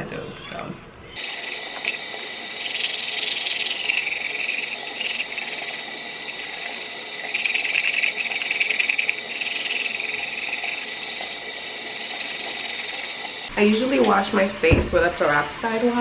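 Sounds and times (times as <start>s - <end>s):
toothbrush scrubbing teeth: 1.2s - 13.5s.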